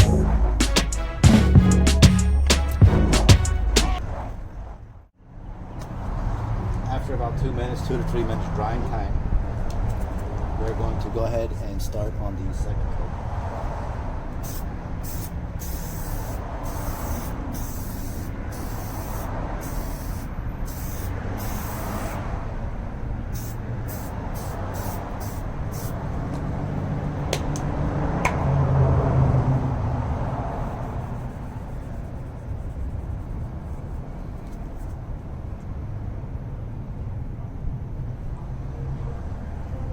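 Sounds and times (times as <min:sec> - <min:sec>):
steady low rumble: 0:00.0 - 0:04.8
aerosol can spraying in bursts: 0:14.4 - 0:22.2, 0:23.4 - 0:26.0.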